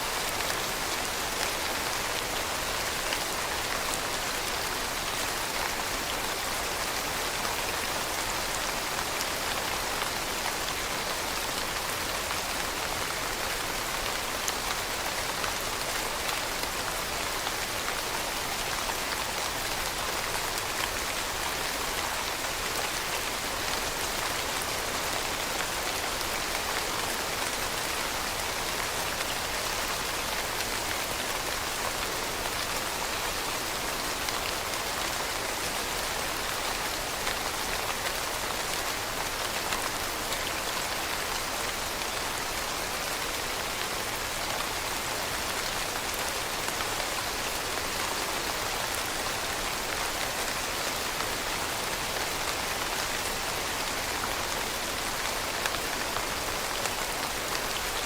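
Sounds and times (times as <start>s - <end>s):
steady rain falling: 0.0s - 58.0s.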